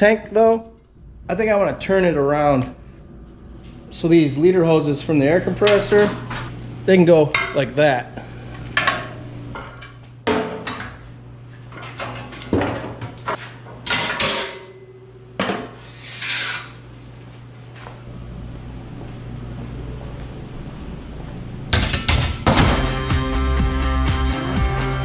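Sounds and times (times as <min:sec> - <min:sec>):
low steady hum: 0:00.0 - 0:22.8
music: 0:22.6 - 0:25.0.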